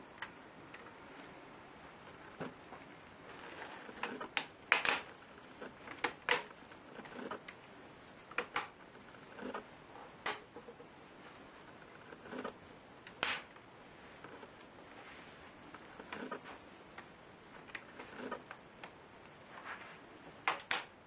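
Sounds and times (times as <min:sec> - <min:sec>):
laptop parts clicking and knocking: 0:03.8 - 0:07.6, 0:08.3 - 0:08.8, 0:09.4 - 0:10.8, 0:20.4 - 0:21.0.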